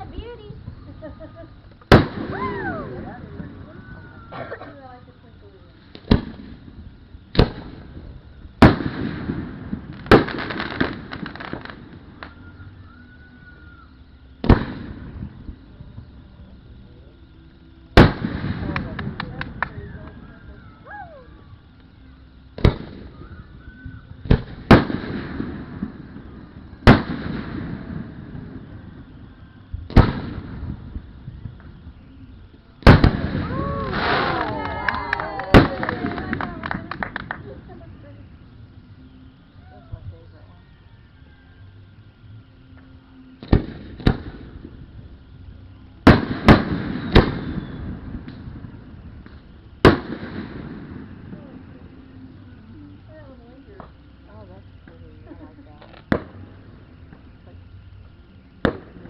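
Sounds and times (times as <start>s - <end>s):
fireworks booming: 0.0s - 12.4s, 14.4s - 16.2s, 18.0s - 20.3s, 22.5s - 32.0s, 32.8s - 38.8s, 43.4s - 45.3s, 46.0s - 57.8s, 58.5s - 59.0s.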